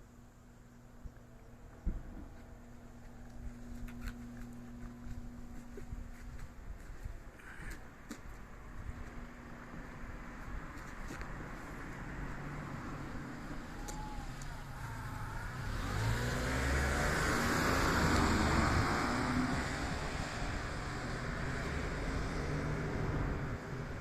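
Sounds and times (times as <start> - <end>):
vehicle passing by: 11.4 - 24.0.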